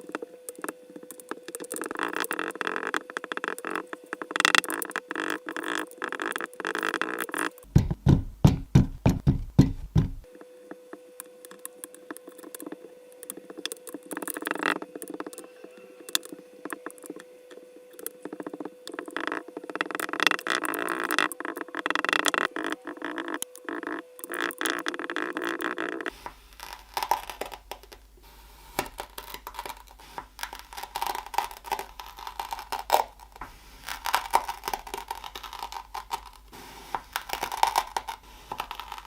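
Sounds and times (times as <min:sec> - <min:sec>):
faint steady hum: 0:00.0 - 0:39.0
dull thumps: 0:07.7 - 0:10.3.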